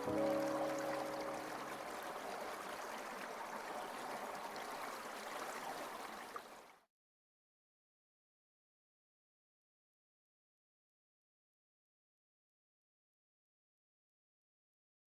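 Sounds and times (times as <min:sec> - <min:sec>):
water stream running: 0:00.0 - 0:06.8.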